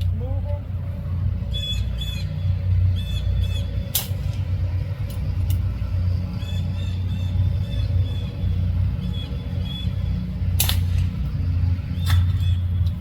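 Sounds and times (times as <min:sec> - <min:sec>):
steady low rumble: 0:00.0 - 0:13.0
air rifle shot: 0:10.6 - 0:11.2.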